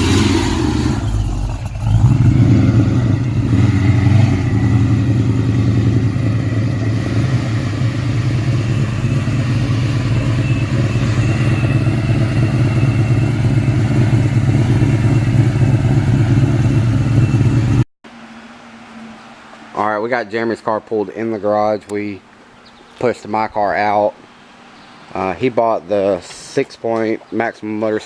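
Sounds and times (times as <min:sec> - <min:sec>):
car engine running steadily: 0:00.0 - 0:17.8.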